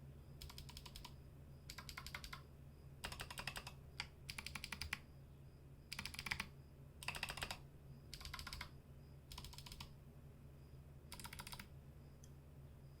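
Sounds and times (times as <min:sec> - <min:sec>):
mechanical keyboard typing: 0:00.4 - 0:02.4, 0:03.0 - 0:05.0, 0:05.9 - 0:08.7, 0:09.3 - 0:09.9, 0:11.1 - 0:11.7.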